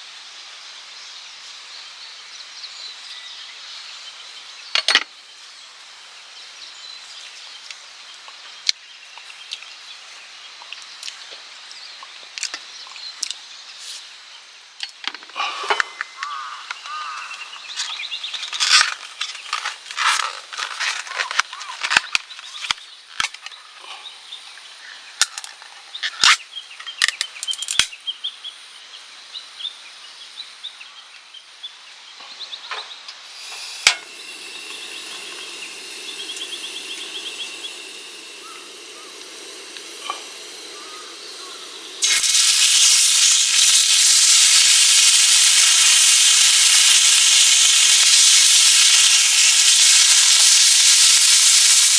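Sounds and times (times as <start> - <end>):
birds calling: 15.5 - 18.6, 34.1 - 51.9
food sizzling in a pan: 33.2 - 51.9
steady gas hiss: 33.2 - 51.9
cooking gear clinking: 42.0 - 51.9.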